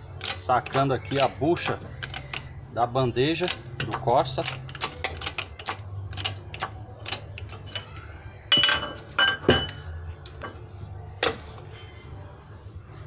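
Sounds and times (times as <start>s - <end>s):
metal tools striking metal: 8.5s - 9.9s.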